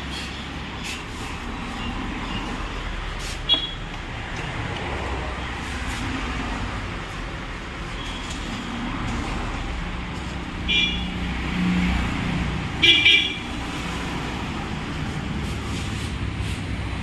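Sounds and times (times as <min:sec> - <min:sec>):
road traffic: 0:00.0 - 0:17.0
vehicle horn honks: 0:10.7 - 0:11.2, 0:12.8 - 0:13.5.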